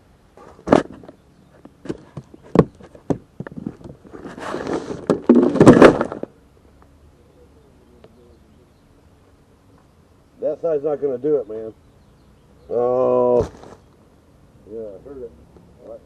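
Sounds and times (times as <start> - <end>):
scraping with heavy thumps: 0.4 - 6.4, 13.1 - 13.9.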